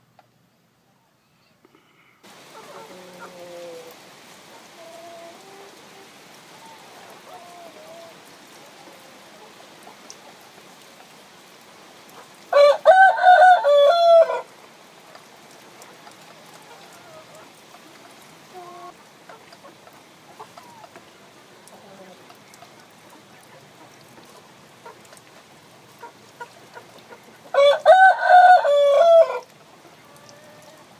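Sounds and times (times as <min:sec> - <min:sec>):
faint hiss: 0:00.0 - 0:13.2
faint chicken calls: 0:02.2 - 0:10.4, 0:26.0 - 0:30.9
rooster crowing: 0:12.5 - 0:14.5, 0:27.5 - 0:29.5.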